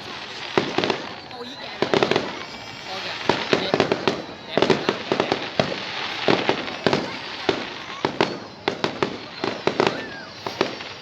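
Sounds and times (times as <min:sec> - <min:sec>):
fireworks bangs: 0:00.0 - 0:11.0
fireworks crackling hiss: 0:00.0 - 0:11.0.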